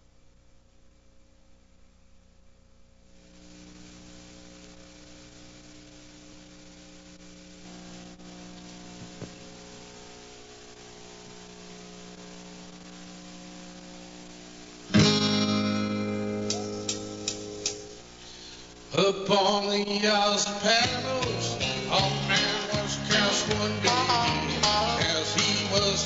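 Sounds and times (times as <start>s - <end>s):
picked guitar notes: 14.9s - 18.0s
strummed acoustic guitar chord: 14.9s - 18.0s, 18.9s - 26.0s.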